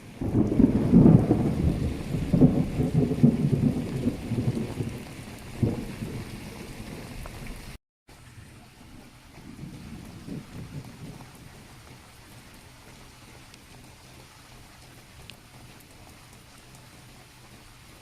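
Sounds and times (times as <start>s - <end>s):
thunder clap: 0.0s - 7.8s, 9.4s - 11.7s
thunder rumbling: 0.0s - 7.8s, 8.9s - 12.6s
heavy rain: 0.0s - 18.0s.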